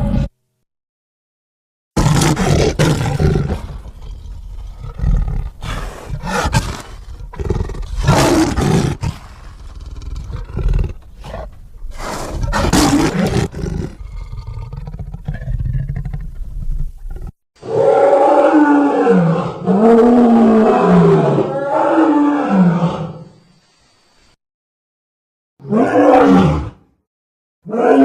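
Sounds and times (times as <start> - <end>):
creature roaring: 2.0 - 15.6, 17.6 - 23.3, 25.6 - 26.9, 27.6 - 28.0.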